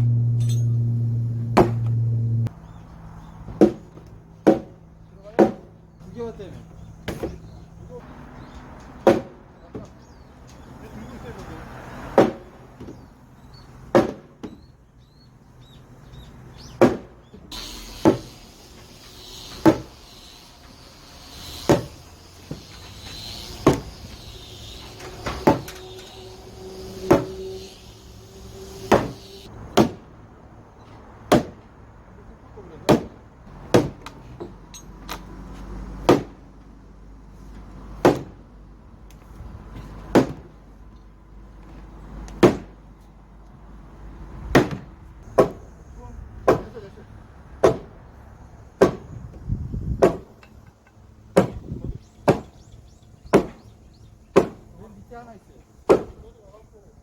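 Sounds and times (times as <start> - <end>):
hammer blows on timber: 0.0 - 2.5, 21.4 - 30.0.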